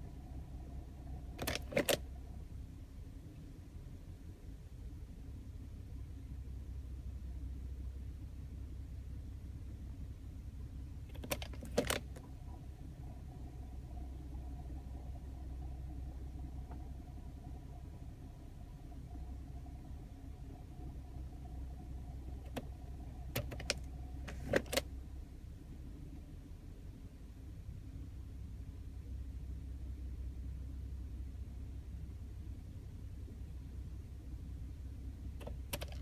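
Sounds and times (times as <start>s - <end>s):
car engine idling: 0.0s - 36.0s
sharp clicking rattles: 1.4s - 2.1s, 11.1s - 12.6s, 22.4s - 24.9s, 35.4s - 36.0s.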